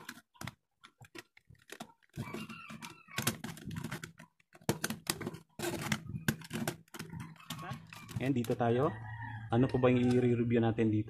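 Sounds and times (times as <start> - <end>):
plastic cover clicks and taps: 0.0 - 8.6.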